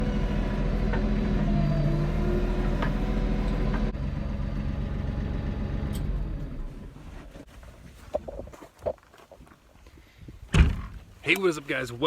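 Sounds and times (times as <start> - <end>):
engine running: 0.0 - 7.2.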